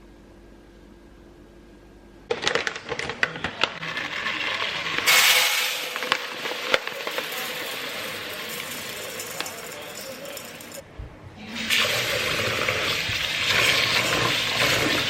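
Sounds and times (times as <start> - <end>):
utensils and dishes clattering: 2.3 - 10.8, 11.6 - 15.0
loud hiss: 5.0 - 9.1.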